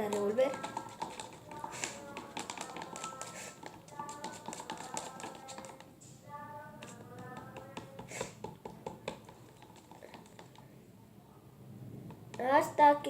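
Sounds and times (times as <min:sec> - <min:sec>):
utensil tapping against container: 0:00.0 - 0:05.9, 0:06.8 - 0:10.7.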